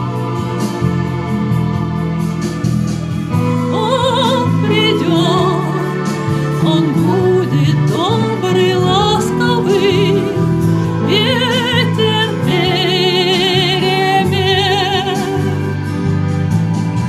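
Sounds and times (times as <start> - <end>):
person singing with vibrato: 3.4 - 16.0.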